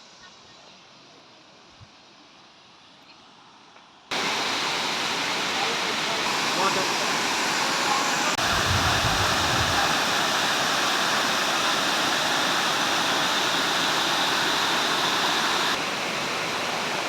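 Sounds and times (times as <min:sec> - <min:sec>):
waterfall rushing: 0:04.1 - 0:17.0.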